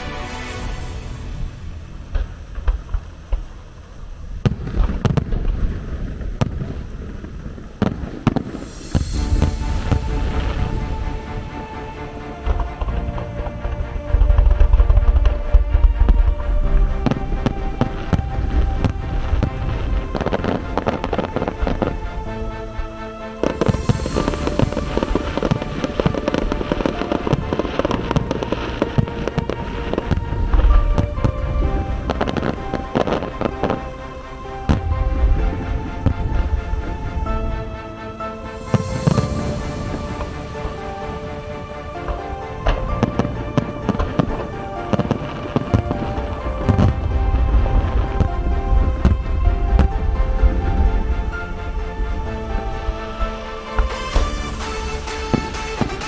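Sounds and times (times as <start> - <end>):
fireworks bursting: 0.0 - 12.9, 23.4 - 33.8, 38.4 - 51.3, 52.7 - 56.0
music: 0.0 - 56.0
fireworks bangs and crackles: 4.4 - 10.9, 38.7 - 40.4, 43.9 - 50.1.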